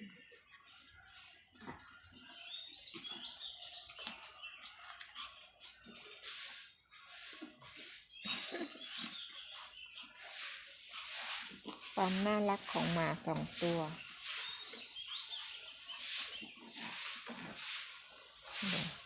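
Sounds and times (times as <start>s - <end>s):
dogs scuffling and rustling: 0.6s - 19.0s.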